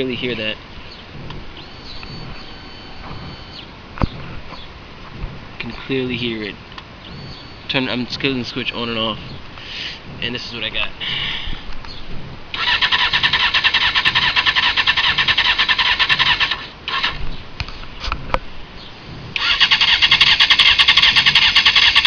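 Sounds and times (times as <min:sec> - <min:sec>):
motorcycle engine cranking: 0:12.5 - 0:17.2, 0:19.4 - 0:22.0.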